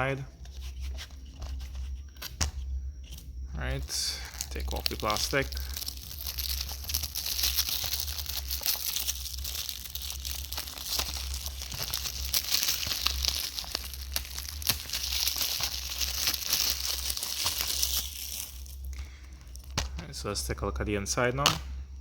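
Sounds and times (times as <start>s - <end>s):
plastic wrap crinkling and tearing: 3.7s - 20.0s.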